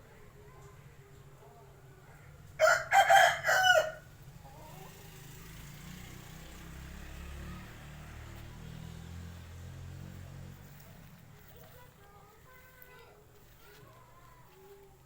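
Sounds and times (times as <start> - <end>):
rooster crowing: 2.6 - 4.1.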